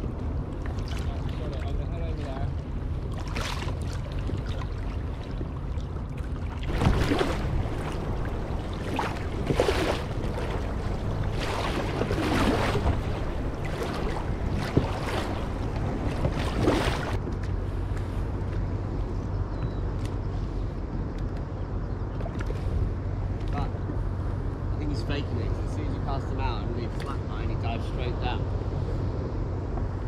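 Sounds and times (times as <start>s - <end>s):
water washing against kayak hull: 0.0s - 17.6s
wind rumble on microphone: 0.0s - 30.0s.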